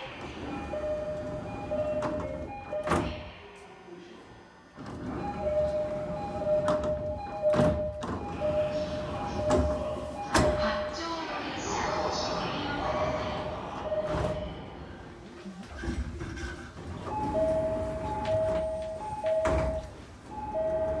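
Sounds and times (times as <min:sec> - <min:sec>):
two-note door chimes: 0:17.3 - 0:21.0.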